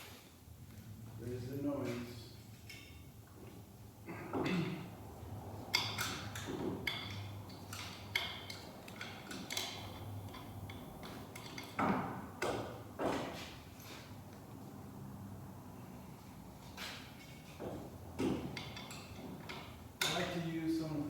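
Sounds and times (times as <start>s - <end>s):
sharp metallic clicks and knocks: 5.7s - 13.2s.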